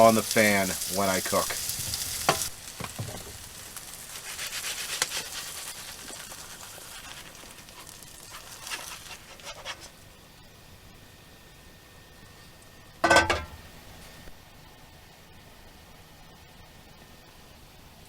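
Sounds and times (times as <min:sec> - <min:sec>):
food sizzling in a skillet: 0:00.0 - 0:10.3
utensil scraping a pan: 0:04.1 - 0:10.0.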